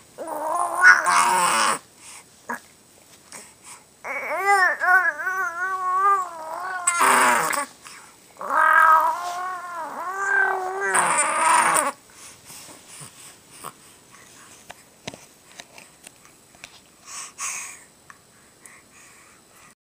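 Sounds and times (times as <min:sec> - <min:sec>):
faint clicks and taps: 0:14.6 - 0:16.9.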